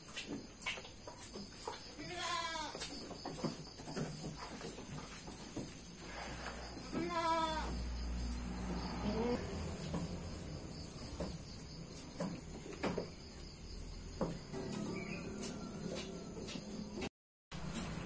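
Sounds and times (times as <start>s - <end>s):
farm animal bleating: 2.0s - 2.9s, 6.4s - 7.9s, 9.0s - 9.7s.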